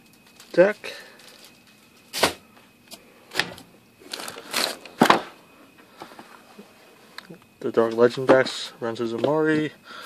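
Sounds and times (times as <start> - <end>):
plastic packaging rustling: 0.0 - 2.2, 4.0 - 5.3.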